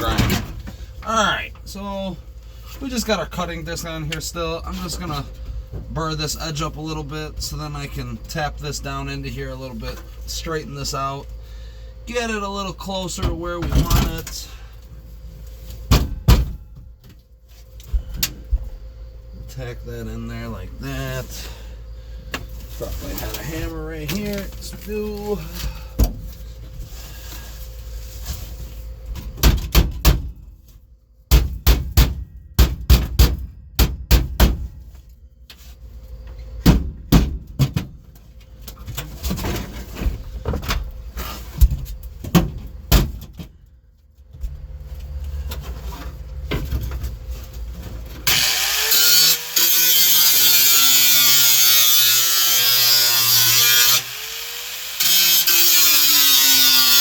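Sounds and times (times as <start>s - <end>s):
angle grinder on metal: 48.3s - 57.0s.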